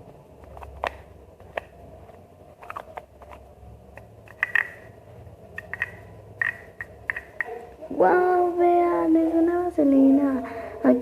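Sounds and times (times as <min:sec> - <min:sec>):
plastic packaging clicks and rustles: 0:00.4 - 0:03.5.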